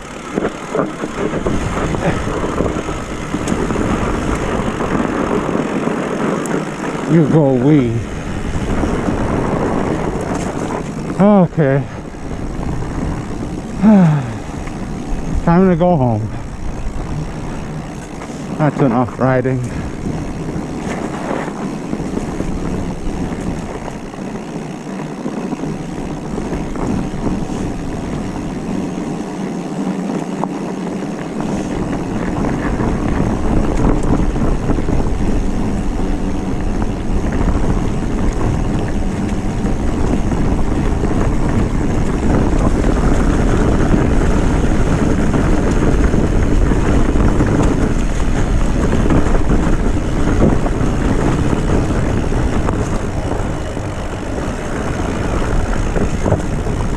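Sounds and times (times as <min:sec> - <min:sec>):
tyres rumbling over ground: 0:00.0 - 0:56.9
wind noise on microphone: 0:00.0 - 0:56.9.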